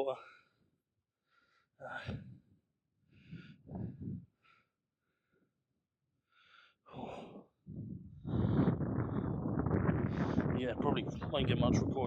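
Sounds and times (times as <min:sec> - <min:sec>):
breathy puffs of breath: 0:03.1 - 0:05.4.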